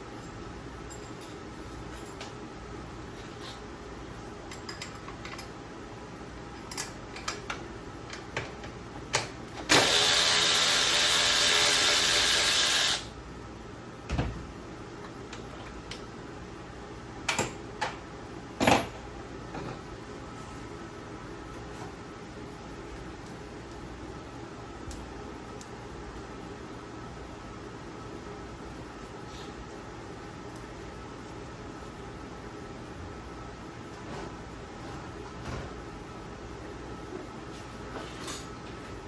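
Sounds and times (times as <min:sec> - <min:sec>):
handheld power tool spinning: 0:09.7 - 0:13.1.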